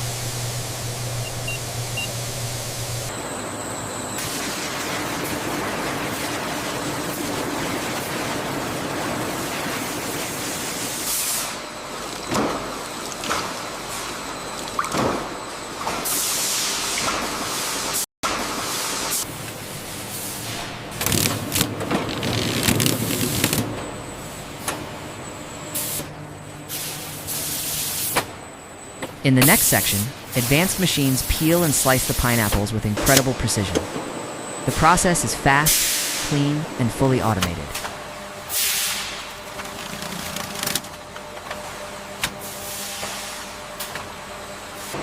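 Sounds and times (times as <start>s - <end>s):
machinery humming: 0.0s - 15.7s, 28.4s - 42.2s
food processing line hiss: 9.8s - 11.6s, 16.0s - 21.6s, 25.7s - 26.1s, 26.7s - 28.3s, 29.4s - 33.7s, 34.7s - 36.7s, 38.4s - 39.6s, 42.4s - 44.0s.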